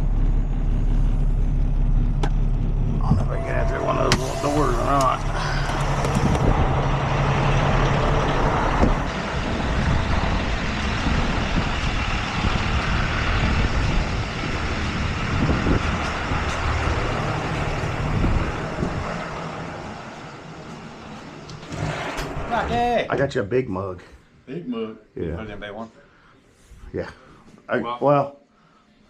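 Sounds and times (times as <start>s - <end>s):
heavy truck engine running: 0.0s - 22.5s.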